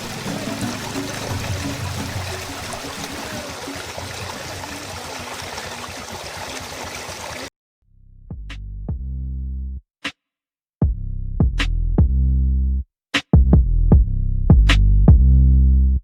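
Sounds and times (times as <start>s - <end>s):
waterfall rushing: 0.0s - 4.9s.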